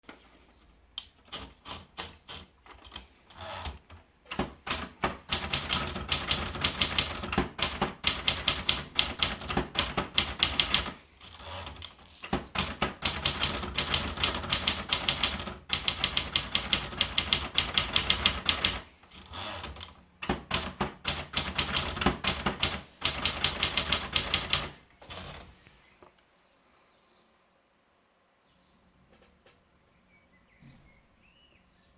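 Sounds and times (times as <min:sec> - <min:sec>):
typewriter key strikes: 0:04.3 - 0:18.8, 0:19.6 - 0:25.4.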